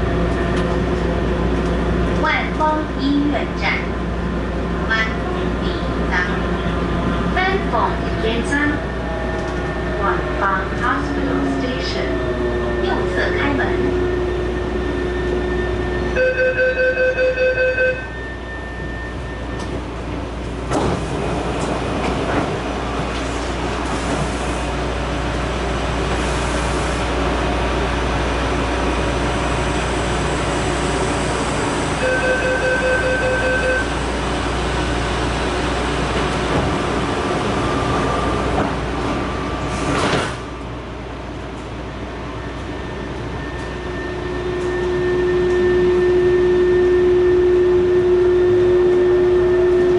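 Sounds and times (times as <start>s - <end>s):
train traction drive whining: 0.0s - 17.0s.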